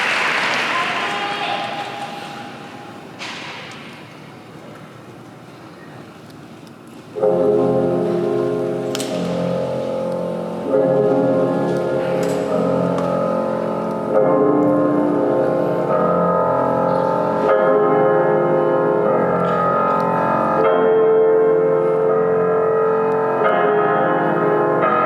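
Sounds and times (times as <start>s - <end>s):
piano and orchestral music: 7.2s - 25.0s.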